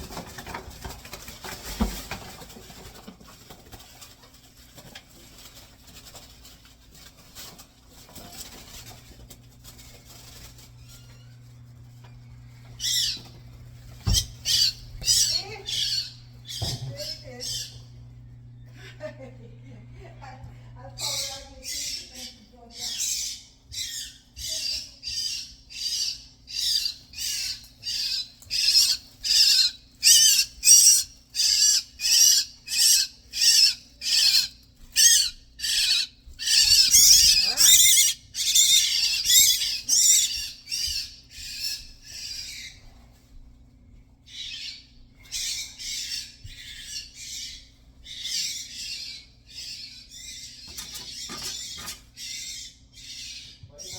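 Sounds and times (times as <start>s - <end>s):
bird giving harsh raspy calls: 22.8s - 42.7s.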